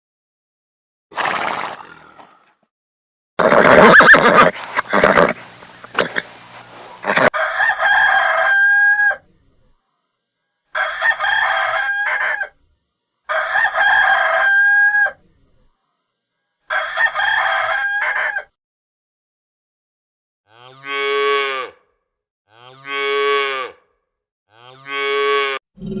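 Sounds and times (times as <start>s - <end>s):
rooster crowing: 3.8s - 4.5s, 7.2s - 9.2s, 10.7s - 12.6s, 13.3s - 15.2s, 16.7s - 18.5s.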